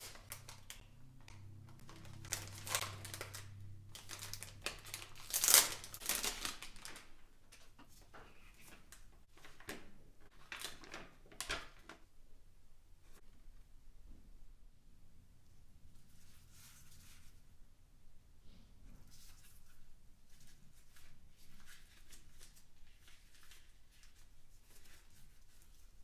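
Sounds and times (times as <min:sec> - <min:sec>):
foil wrapper crinkling: 0:00.0 - 0:07.2, 0:08.6 - 0:11.9.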